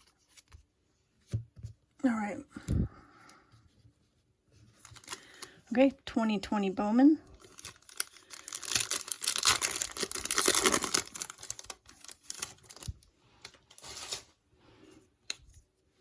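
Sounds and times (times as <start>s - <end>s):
cards rustling and clicking: 4.7s - 5.6s, 7.4s - 14.3s
wrapper tearing and crinkling: 4.8s - 5.5s, 7.4s - 14.3s.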